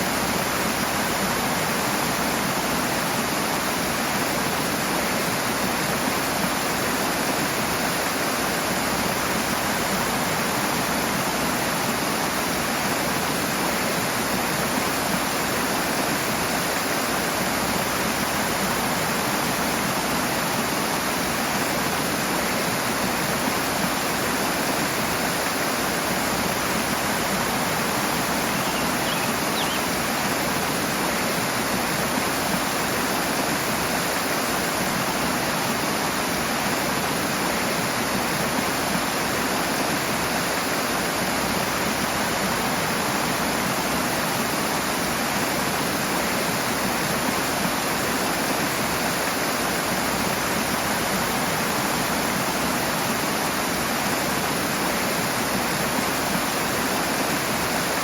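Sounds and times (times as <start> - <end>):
rushing stream water: 0.0 - 58.0.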